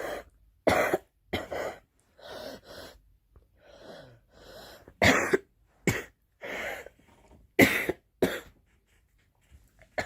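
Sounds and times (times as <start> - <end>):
girl coughing: 0.7 - 1.8, 5.0 - 6.2, 7.6 - 8.6.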